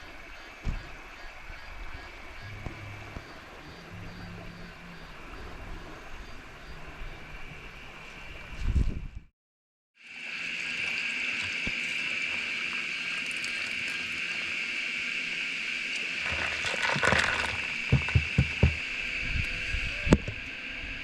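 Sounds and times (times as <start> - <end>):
running river water: 0.0 - 8.5, 10.0 - 21.0
insect chorus drone: 0.0 - 9.0, 10.0 - 21.0
low knocks: 17.8 - 18.9.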